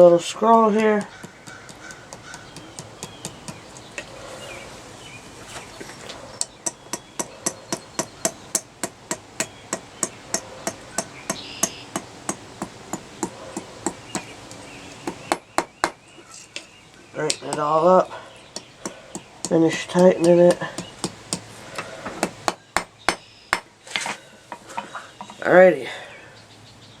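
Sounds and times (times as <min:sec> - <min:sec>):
hammer striking nail on anvil: 0:01.0 - 0:04.1, 0:06.4 - 0:14.3, 0:15.0 - 0:16.1, 0:18.6 - 0:21.5.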